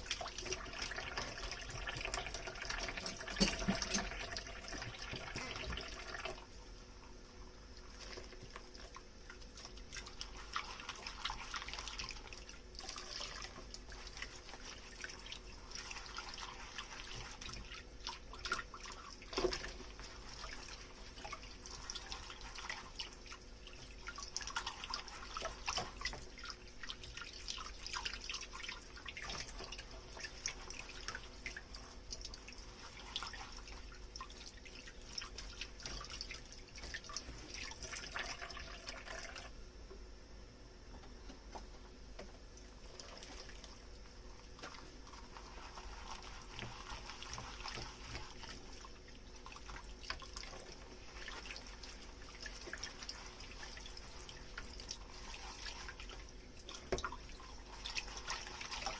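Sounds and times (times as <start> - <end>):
water dripping and trickling: 0.0 - 6.8, 7.6 - 39.6, 42.2 - 58.9
dishes knocking and clinking: 3.2 - 4.2.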